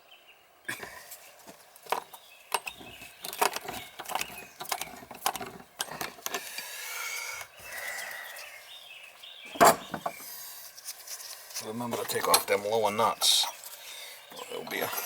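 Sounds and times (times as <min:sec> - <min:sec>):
metal tools clinking: 0:01.9 - 0:06.7, 0:09.5 - 0:10.2, 0:12.0 - 0:13.5.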